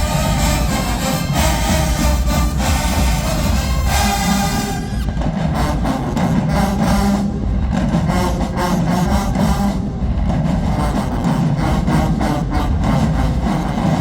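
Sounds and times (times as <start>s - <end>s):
brass playing: 0.0s - 6.0s
drumline beat: 0.0s - 14.0s.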